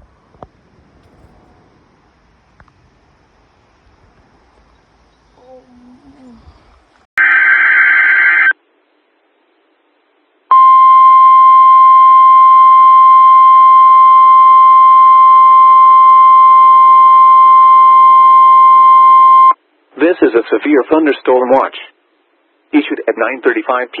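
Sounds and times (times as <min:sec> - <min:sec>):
digital header tones: 0:10.5 - 0:19.6
steady single-pitch alert tone: 0:10.5 - 0:19.6.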